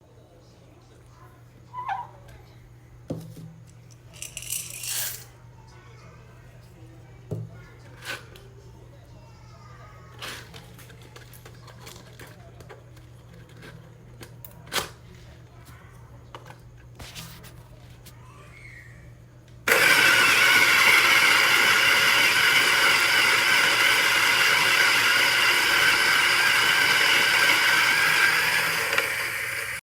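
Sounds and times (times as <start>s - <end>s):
coffee grinder whirring: 19.7s - 29.8s.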